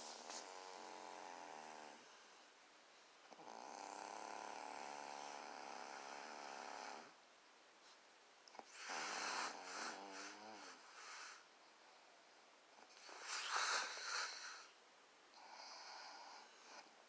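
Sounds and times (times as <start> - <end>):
buzzing snores: 0.0 - 2.2, 3.3 - 7.2, 8.6 - 11.4, 13.0 - 14.7, 15.4 - 16.9.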